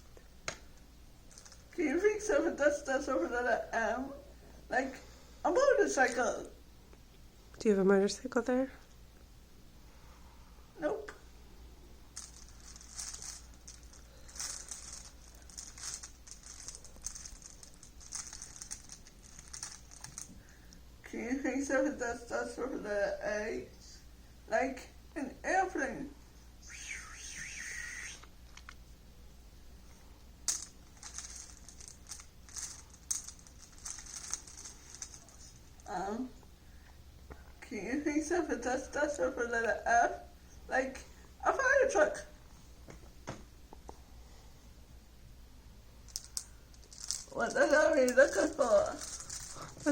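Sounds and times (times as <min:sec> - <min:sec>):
hands rummaging through small items: 0:01.3 - 0:01.7, 0:12.2 - 0:20.4, 0:30.5 - 0:35.8, 0:46.1 - 0:49.9
small hard objects clicking: 0:12.2 - 0:20.4, 0:30.5 - 0:35.8, 0:46.1 - 0:49.9.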